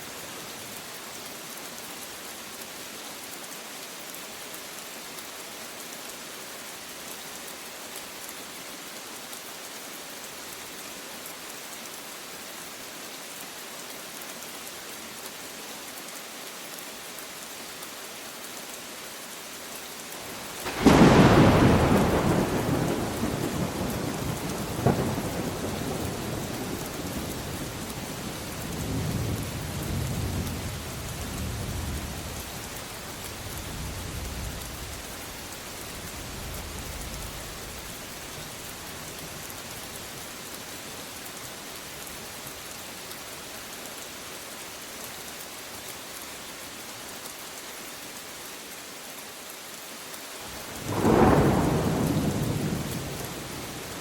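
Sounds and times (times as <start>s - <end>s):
steady rain: 0.0s - 54.0s
thunder rumbling: 20.5s - 32.6s, 50.6s - 54.0s.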